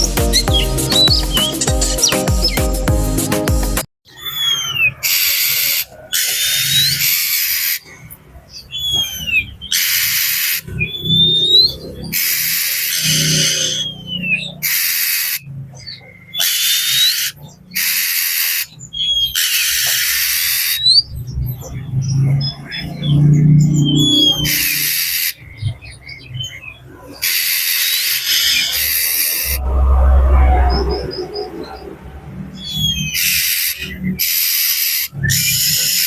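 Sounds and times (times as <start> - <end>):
bird harsh scold calls: 4.1 - 29.8, 30.6 - 36.0
bird whistled sliding notes: 23.6 - 25.3, 28.1 - 32.0.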